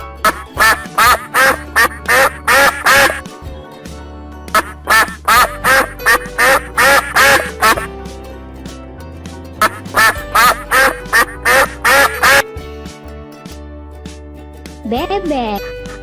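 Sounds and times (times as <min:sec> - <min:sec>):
background music: 0:00.0 - 0:16.0
duck quacking: 0:00.2 - 0:03.2, 0:04.6 - 0:07.9, 0:09.6 - 0:12.4.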